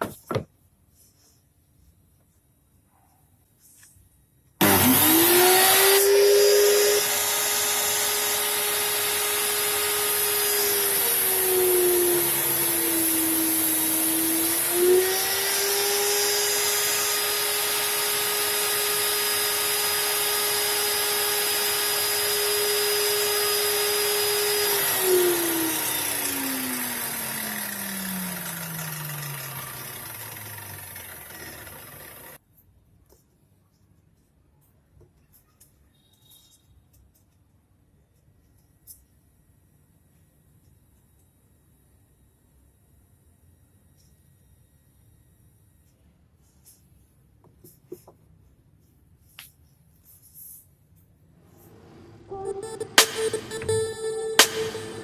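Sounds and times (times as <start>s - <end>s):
table saw motor whine: 4.6s - 32.4s, 51.4s - 55.0s.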